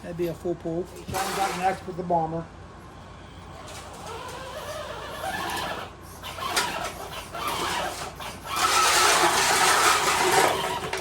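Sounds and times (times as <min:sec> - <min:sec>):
electric motor and gears whining: 0:03.5 - 0:11.0.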